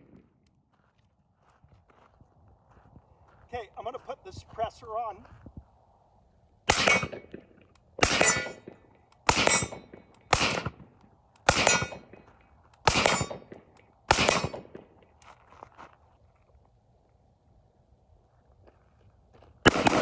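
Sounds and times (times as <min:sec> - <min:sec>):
suppressed rifle shots: 0:06.7 - 0:10.9, 0:11.5 - 0:12.2, 0:12.8 - 0:14.8, 0:19.7 - 0:20.0.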